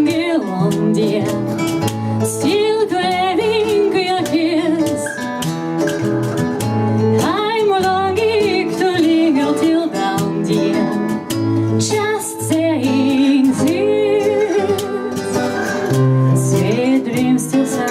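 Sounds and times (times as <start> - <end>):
strummed acoustic guitar: 0.0 - 17.9
person singing with vibrato: 7.2 - 17.9.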